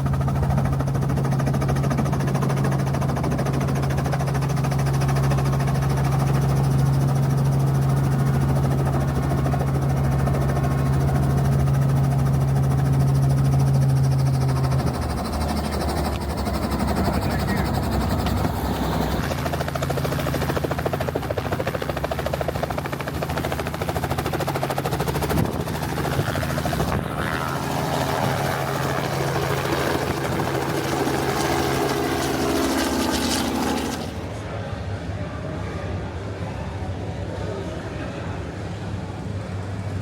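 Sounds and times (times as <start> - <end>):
helicopter rotor chop: 0.0 - 34.6
low engine hum: 5.4 - 21.2, 21.9 - 34.5.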